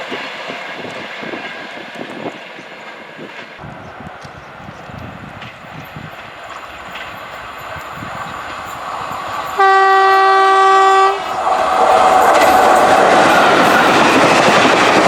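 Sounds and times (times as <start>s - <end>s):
train rumble: 0.0s - 15.0s
wheel clatter of passing train: 0.0s - 15.0s
train horn blast: 9.5s - 11.4s.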